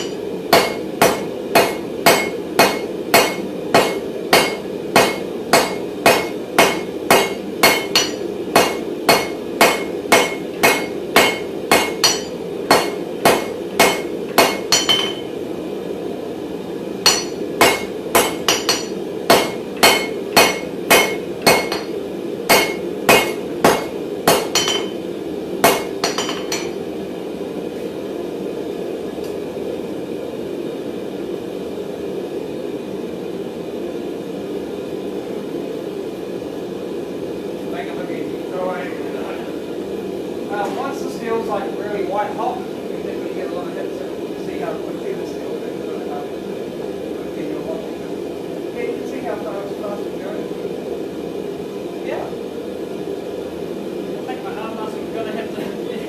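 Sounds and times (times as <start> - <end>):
hammer striking metal on anvil: 0.0 - 15.3, 17.0 - 21.9, 22.5 - 25.0, 25.6 - 26.8.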